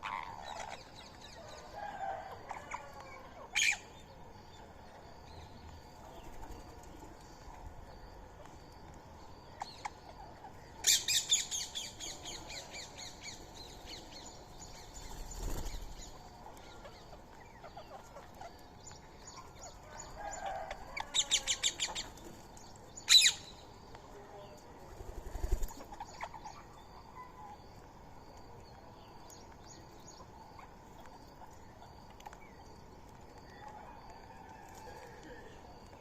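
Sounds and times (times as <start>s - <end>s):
small bird chirping faintly: 0.0s - 36.0s
bird wings fluttering: 14.9s - 16.2s, 24.9s - 25.9s.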